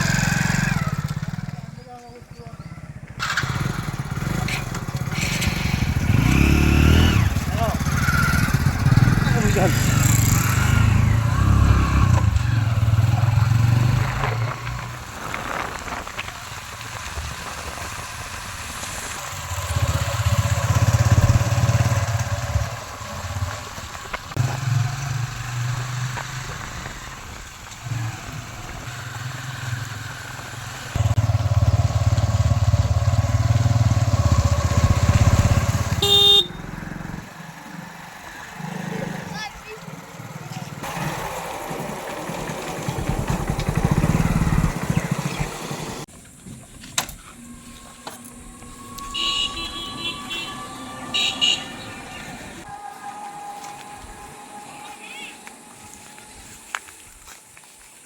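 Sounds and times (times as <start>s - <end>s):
diesel engine revving: 0.0s - 1.8s, 3.0s - 46.1s, 47.1s - 52.7s.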